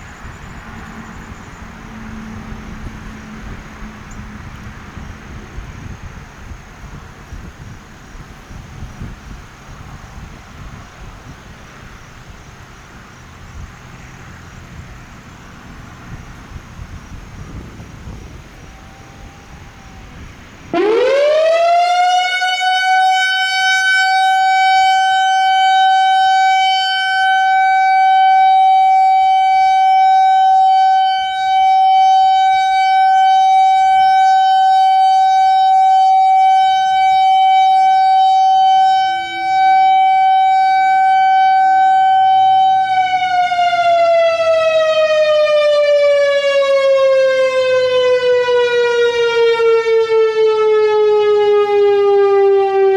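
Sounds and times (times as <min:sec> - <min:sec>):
electronic warning siren: 0:17.4 - 0:52.9.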